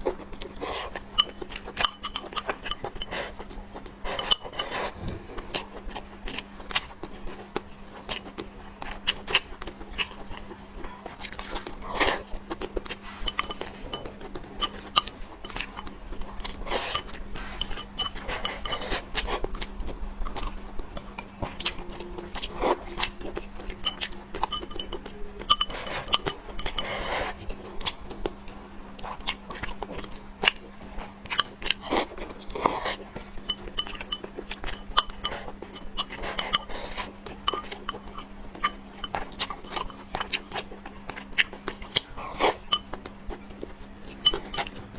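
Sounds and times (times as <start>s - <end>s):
chewing: 0.0s - 44.9s
faint steady hum: 0.0s - 44.9s
utensils clinking on a plate: 0.6s - 3.4s, 4.0s - 5.6s, 12.9s - 19.3s, 23.0s - 27.2s, 32.6s - 40.0s, 41.9s - 42.9s, 44.1s - 44.9s.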